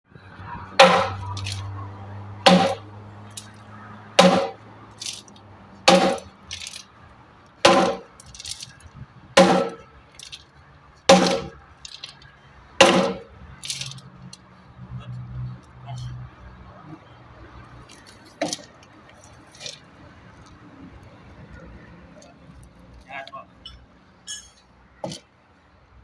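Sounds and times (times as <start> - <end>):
concrete pump clanking: 0.7 - 6.9, 7.6 - 10.5, 11.1 - 14.3.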